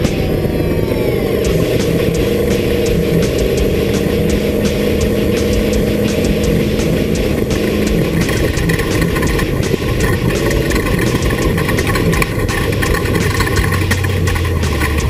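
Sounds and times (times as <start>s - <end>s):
race vehicle engine running: 0.0s - 15.0s
clicks and rattles: 1.5s - 15.0s.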